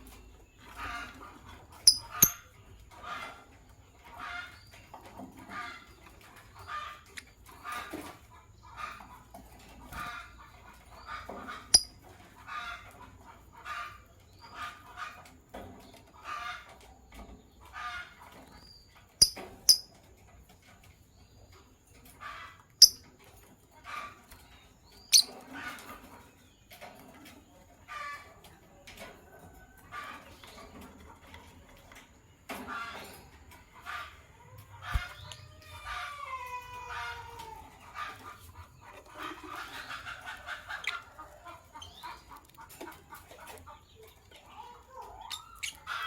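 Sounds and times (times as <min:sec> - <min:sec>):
lovebirds scratchy calls: 0:00.0 - 0:15.3, 0:16.2 - 0:20.0, 0:20.8 - 0:28.2, 0:32.5 - 0:36.2, 0:37.8 - 0:46.0
shrill high-pitched bird chirps: 0:01.9 - 0:02.4, 0:19.2 - 0:19.9.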